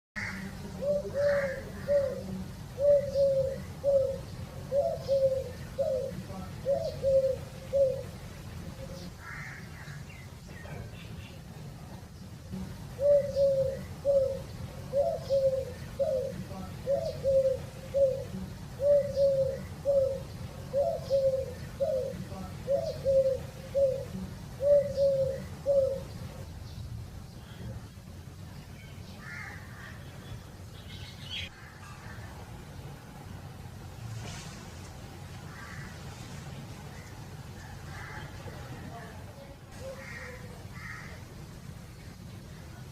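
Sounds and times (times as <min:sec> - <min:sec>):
dove cooing: 0:00.2 - 0:10.0, 0:12.6 - 0:26.5, 0:39.7 - 0:41.2
small birds chirping: 0:00.2 - 0:33.1.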